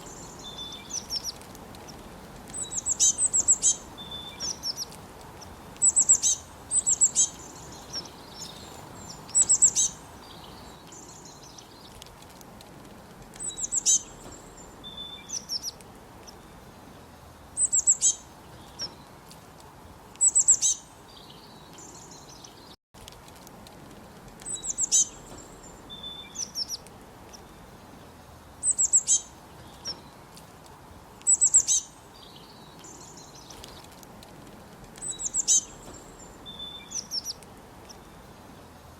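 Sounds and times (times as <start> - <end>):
forest ambience hiss: 0.0 - 38.9.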